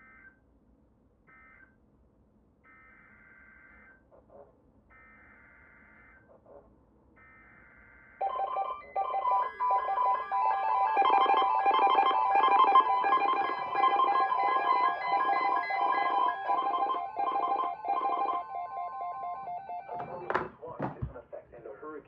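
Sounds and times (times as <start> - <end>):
pulsing emergency alert beeps: 8.2 - 20.5.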